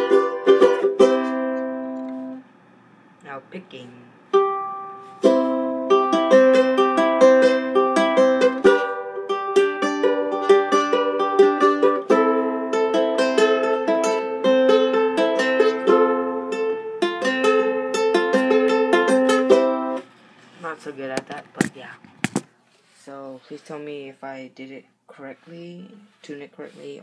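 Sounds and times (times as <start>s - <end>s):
ukulele fingerpicked notes: 0.0s - 2.4s, 4.3s - 20.1s.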